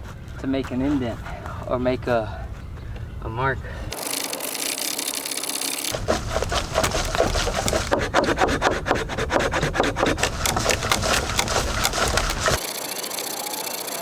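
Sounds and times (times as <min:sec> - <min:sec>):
hand saw cutting wood: 0:04.0 - 0:12.6.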